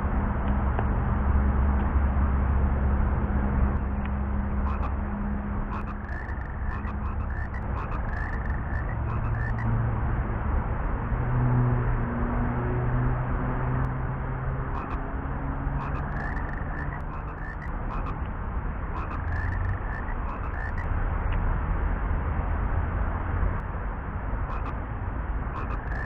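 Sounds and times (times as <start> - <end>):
steady low hum: 0.0 - 10.0, 13.8 - 21.0, 23.6 - 26.0
frogs croaking and chirping: 4.6 - 9.7, 14.6 - 15.1, 15.7 - 18.2, 18.9 - 20.9, 24.5 - 24.8, 25.5 - 26.0.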